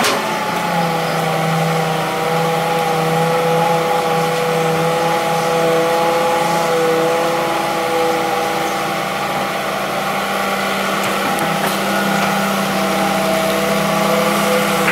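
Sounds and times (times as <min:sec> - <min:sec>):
excavator engine running: 0:00.0 - 0:14.9
steady whine: 0:07.8 - 0:14.9.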